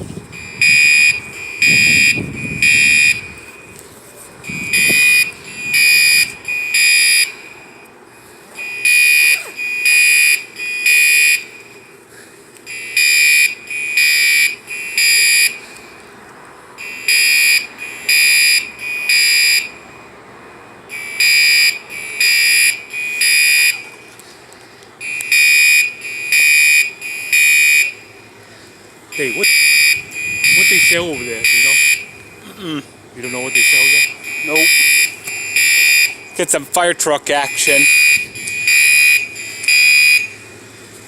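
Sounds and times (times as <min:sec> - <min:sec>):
fire alarm high-pitched beeps: 0:00.3 - 0:03.8, 0:04.4 - 0:07.9, 0:08.6 - 0:11.9, 0:12.7 - 0:15.6, 0:16.8 - 0:20.1, 0:20.8 - 0:23.9, 0:25.0 - 0:28.2, 0:29.1 - 0:32.4, 0:33.2 - 0:36.6, 0:37.3 - 0:40.5.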